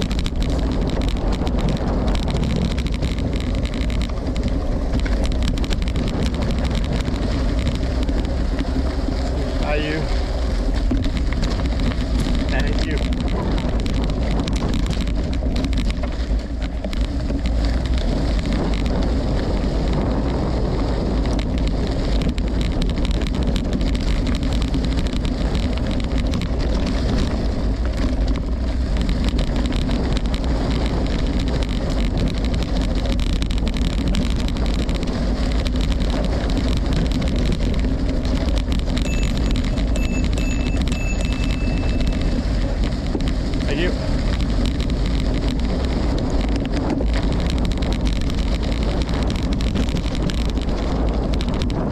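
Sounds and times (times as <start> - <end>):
bike rolling on gravel: 0.0 - 51.9
wind on microphone: 0.0 - 51.9
short high-pitched tone: 39.1 - 42.3.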